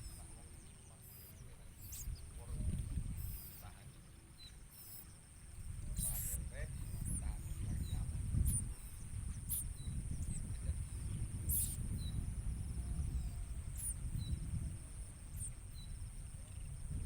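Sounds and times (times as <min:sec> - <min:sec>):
high bird chirps and calls: 0:00.0 - 0:02.6, 0:03.2 - 0:05.2, 0:05.9 - 0:12.2, 0:13.1 - 0:14.4
thin high whine: 0:00.0 - 0:03.8, 0:04.4 - 0:17.0.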